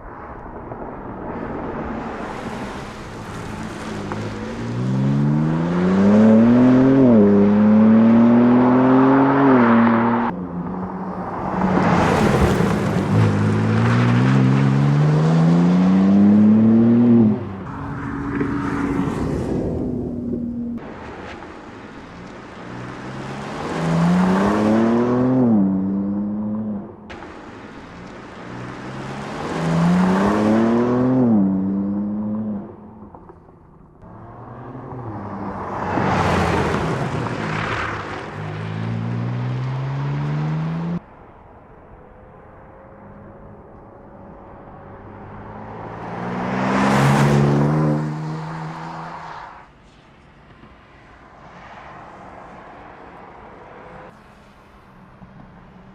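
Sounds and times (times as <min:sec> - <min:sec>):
car engine accelerating hard: 0:34.0 - 0:41.0.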